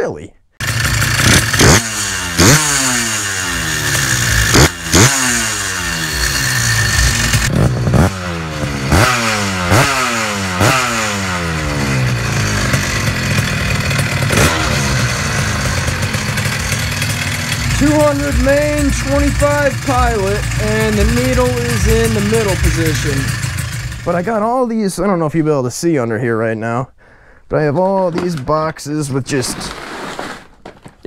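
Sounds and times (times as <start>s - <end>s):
motorcycle engine revving: 0.6s - 24.5s.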